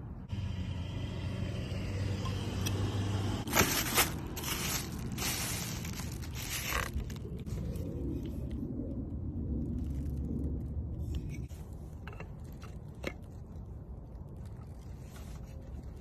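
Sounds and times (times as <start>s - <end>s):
sharp packaging crackles: 3.5s - 7.7s
packaging rustling and scraping: 3.5s - 8.3s.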